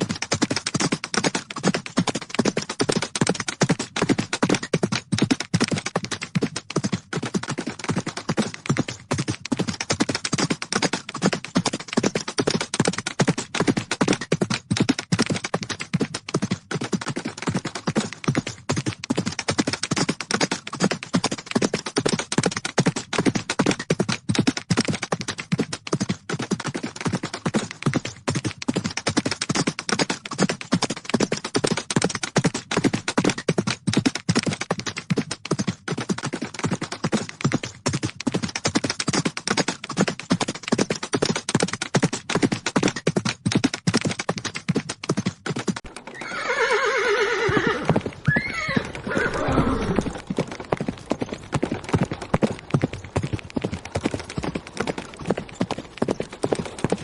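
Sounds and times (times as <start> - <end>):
horses galloping: 0.0 - 57.0
horse neighing: 46.0 - 50.2.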